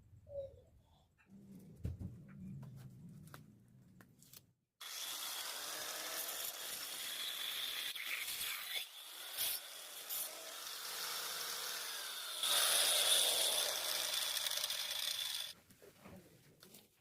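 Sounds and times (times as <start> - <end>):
power tool whining on wood: 8.7 - 15.6.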